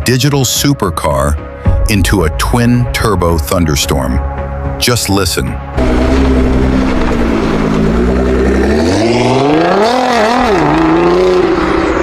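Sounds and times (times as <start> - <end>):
car engine revving: 5.8 - 12.0.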